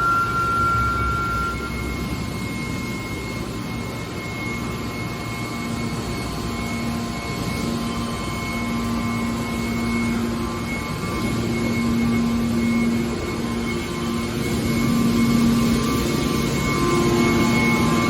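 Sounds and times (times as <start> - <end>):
low hum: 0.0 - 3.2
can baler machine drone: 0.0 - 18.0.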